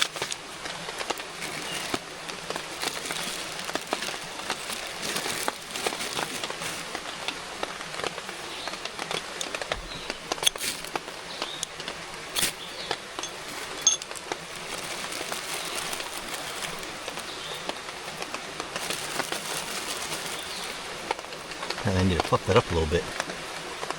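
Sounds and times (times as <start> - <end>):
creek water running: 0.0 - 23.9
light rain: 0.0 - 23.9.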